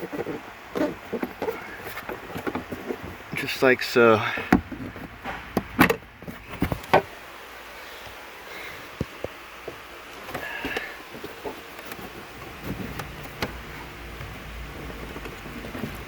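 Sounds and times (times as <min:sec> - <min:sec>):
carpet rustling: 0:00.0 - 0:16.0
steady background hiss: 0:00.0 - 0:16.0.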